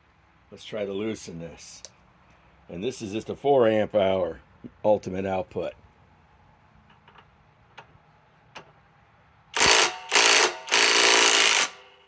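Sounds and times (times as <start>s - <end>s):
impact wrench hammering on bolt: 9.6s - 12.0s.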